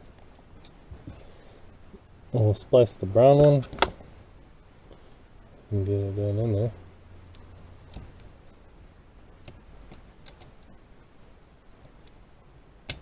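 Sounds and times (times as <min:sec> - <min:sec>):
small clicks of wire splicing: 0:09.4 - 0:10.7.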